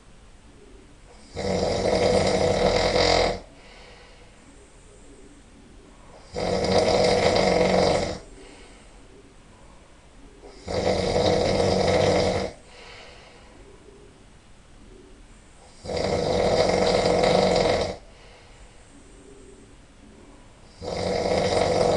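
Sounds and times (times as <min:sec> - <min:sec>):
person snoring loudly: 0:01.1 - 0:03.5, 0:06.2 - 0:08.3, 0:10.5 - 0:13.0, 0:15.7 - 0:18.1, 0:20.7 - 0:21.9.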